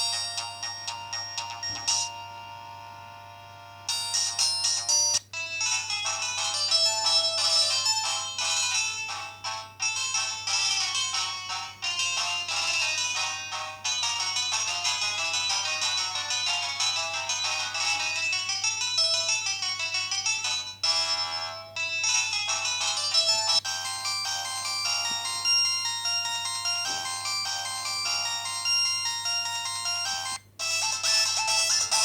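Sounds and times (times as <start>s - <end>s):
mobile phone ringtone melody: 0.0s - 32.0s.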